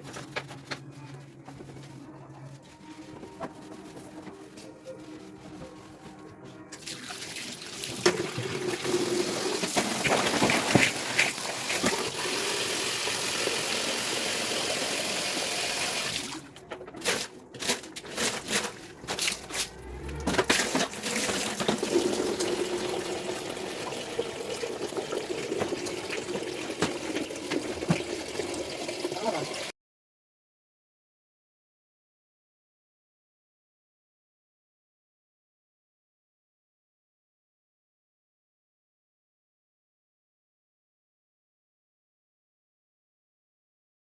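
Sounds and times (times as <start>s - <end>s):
tap water running and splashing: 6.8s - 16.4s, 20.8s - 29.7s.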